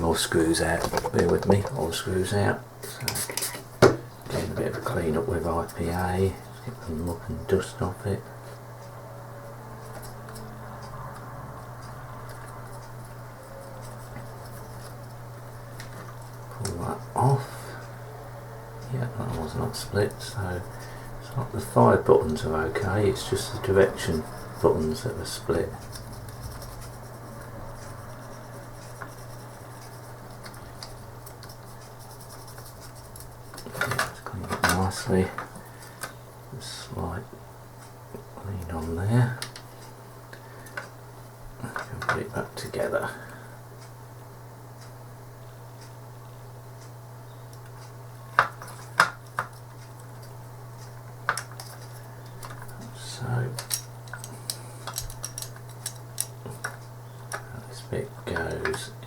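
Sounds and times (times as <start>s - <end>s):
rubbing and scratching of parts: 0.0s - 2.0s, 2.9s - 7.2s, 11.7s - 17.4s, 19.1s - 35.6s, 51.3s - 57.5s
steady low hum: 0.0s - 59.0s.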